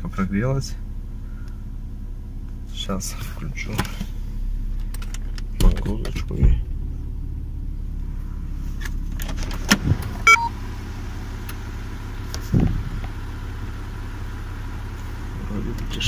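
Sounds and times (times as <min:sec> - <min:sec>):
car engine idling: 0:00.0 - 0:16.0
short electronic beep: 0:10.2 - 0:10.6.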